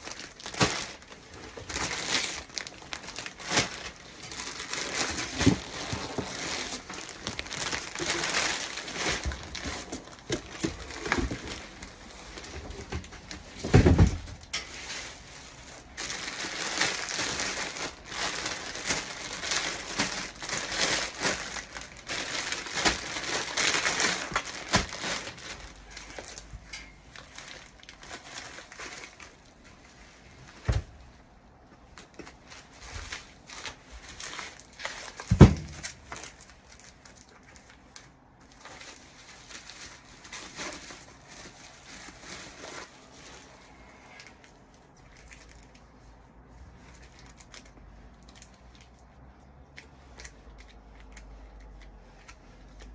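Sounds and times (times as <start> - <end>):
packaging crinkling and rustling: 0.0 - 52.9.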